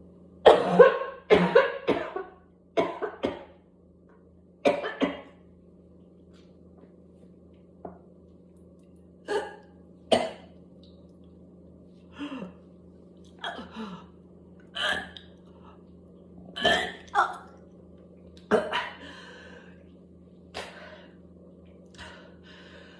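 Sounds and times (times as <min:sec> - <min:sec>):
steady low hum: 0:00.0 - 0:22.9
person coughing harshly: 0:00.5 - 0:03.6, 0:04.6 - 0:05.4, 0:09.3 - 0:10.5, 0:16.6 - 0:17.3, 0:18.5 - 0:19.0.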